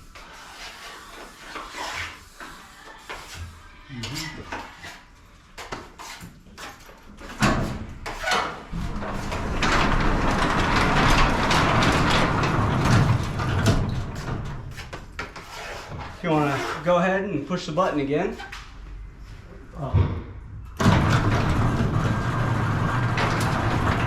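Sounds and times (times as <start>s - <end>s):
garage door opener rumbling: 7.4s - 14.8s, 20.7s - 24.0s.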